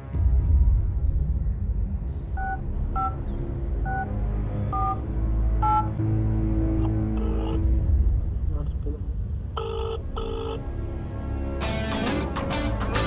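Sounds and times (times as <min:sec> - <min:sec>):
low rumble: 0:00.0 - 0:10.2
two-tone keypad beeps: 0:04.7 - 0:05.0, 0:05.6 - 0:05.9.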